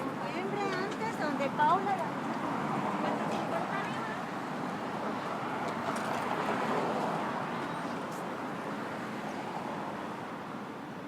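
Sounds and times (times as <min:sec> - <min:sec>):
passing vehicles: 0:00.0 - 0:11.0.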